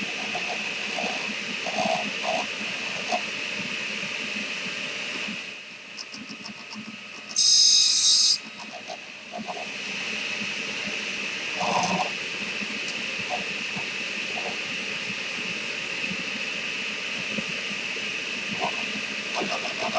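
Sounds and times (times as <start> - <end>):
saw blade cutting wood: 7.4 - 8.4
table saw whine: 7.4 - 8.7.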